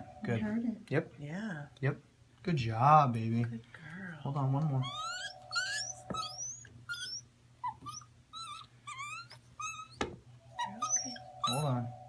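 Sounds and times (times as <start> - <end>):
gibbon squeaking: 4.8 - 11.9.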